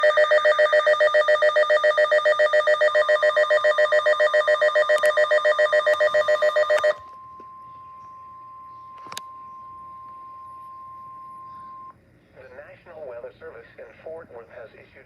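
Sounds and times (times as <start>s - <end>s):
electronic alert tone beeping rapidly: 0.0s - 7.0s
faint steady tone: 0.0s - 12.0s.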